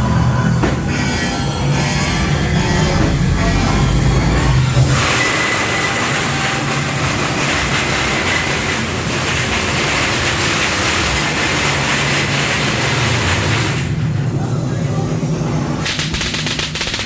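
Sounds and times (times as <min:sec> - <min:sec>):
music: 0:00.0 - 0:07.3.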